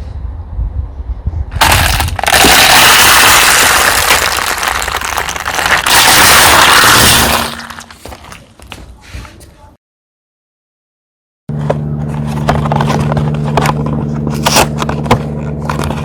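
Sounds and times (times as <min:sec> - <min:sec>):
tyre crunching objects: 0:01.6 - 0:09.3, 0:11.5 - 0:16.0
tyre rolling rumble: 0:11.5 - 0:16.0.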